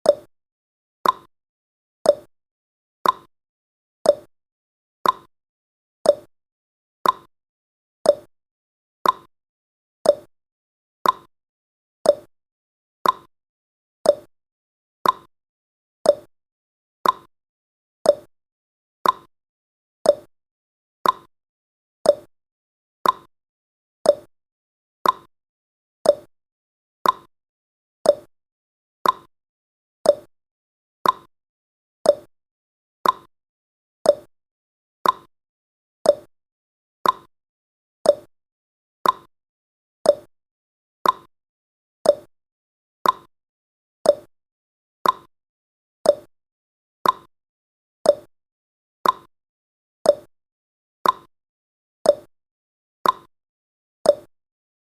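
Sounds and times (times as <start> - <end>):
clock ticking: 13.0 - 13.3, 29.0 - 29.3, 33.0 - 33.3, 37.0 - 37.3, 39.0 - 39.3, 43.0 - 43.3, 45.0 - 45.3, 47.0 - 47.3.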